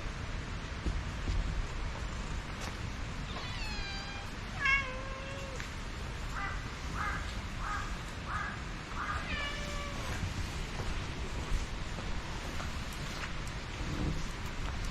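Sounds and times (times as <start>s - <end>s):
cat meowing: 3.2s - 5.6s, 9.0s - 10.3s.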